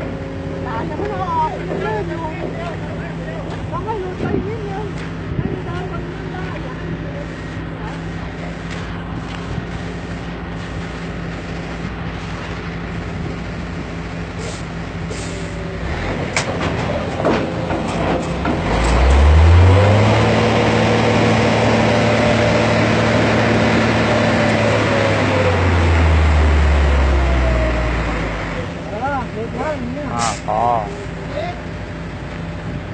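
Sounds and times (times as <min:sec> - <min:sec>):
diesel engine revving: 0:00.0 - 0:32.9
short hisses: 0:14.4 - 0:15.6, 0:30.2 - 0:30.5.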